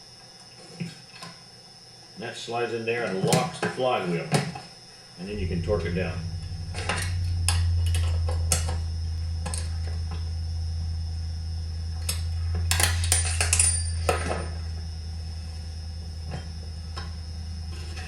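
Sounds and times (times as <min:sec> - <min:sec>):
steady low hum: 0:04.9 - 0:18.0.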